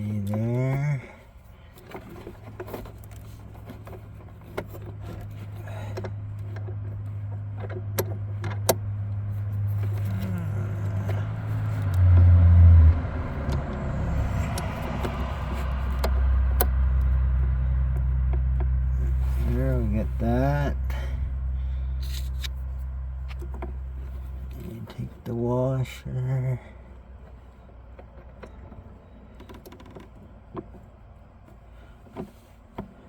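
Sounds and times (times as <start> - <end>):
low rumble: 8.2 - 25.0.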